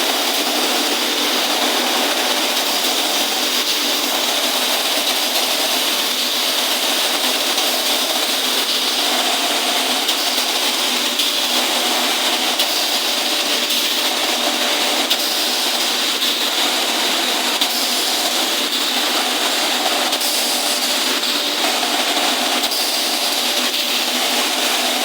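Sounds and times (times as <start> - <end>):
furnace rushing roar: 0.0 - 25.0.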